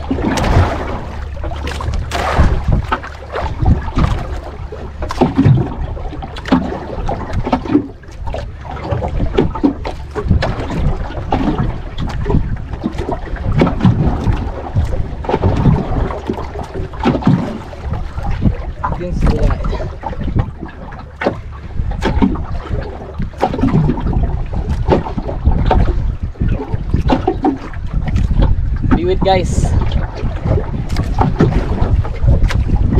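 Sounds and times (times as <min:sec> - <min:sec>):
water slapping against boat: 0:00.0 - 0:32.9
wind rumble on microphone: 0:00.0 - 0:32.9.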